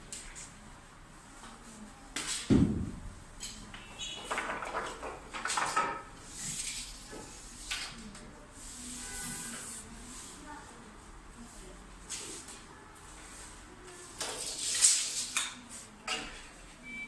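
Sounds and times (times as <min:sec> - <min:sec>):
objects knocking and scraping: 0:02.2 - 0:08.0.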